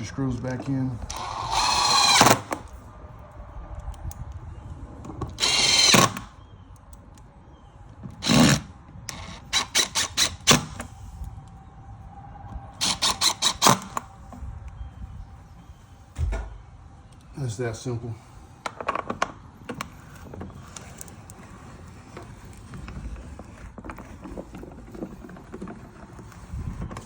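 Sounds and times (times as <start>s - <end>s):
cordless drill driving screws: 1.1s - 2.7s, 5.3s - 6.3s, 8.2s - 10.9s, 12.8s - 14.0s.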